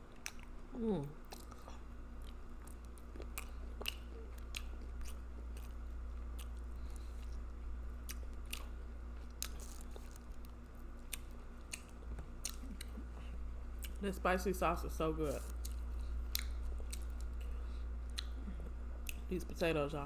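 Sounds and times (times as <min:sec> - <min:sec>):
chewing and mouth smacking: 0:00.0 - 0:14.0, 0:15.2 - 0:19.6
steady low hum: 0:00.0 - 0:20.0.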